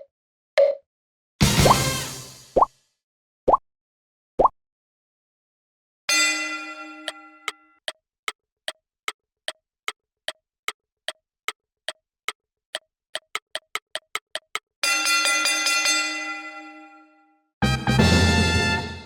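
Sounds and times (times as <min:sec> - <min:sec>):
clock-like ticking: 0:11.5 - 0:14.7.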